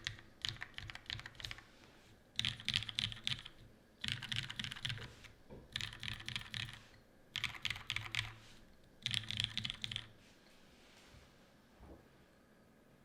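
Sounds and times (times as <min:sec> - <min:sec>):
mechanical keyboard typing: 0:00.0 - 0:01.7, 0:02.4 - 0:08.4, 0:09.0 - 0:10.1.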